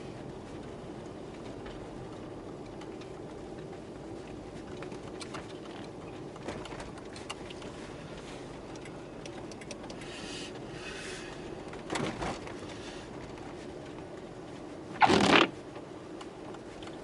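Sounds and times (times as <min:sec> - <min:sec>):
road and wind noise: 0:00.0 - 0:17.0
light ticks: 0:02.5 - 0:10.1, 0:15.8 - 0:17.0.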